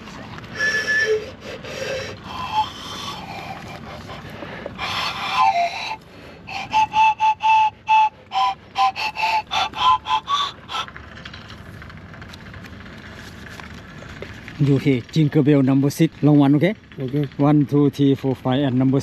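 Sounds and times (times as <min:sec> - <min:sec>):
whistle-like notes: 0:00.5 - 0:04.0, 0:04.8 - 0:10.9.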